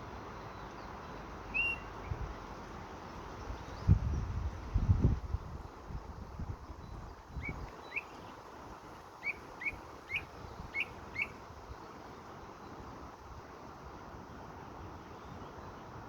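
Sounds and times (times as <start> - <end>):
songbird short rising chirps: 1.5 - 2.2, 9.2 - 11.4.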